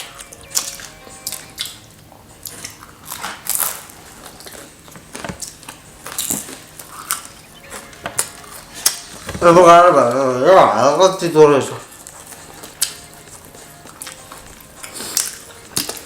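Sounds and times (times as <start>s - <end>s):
pizza crust crunching: 0.0s - 10.3s, 11.9s - 16.0s
chewing mouth sounds: 0.5s - 9.2s, 11.9s - 16.0s.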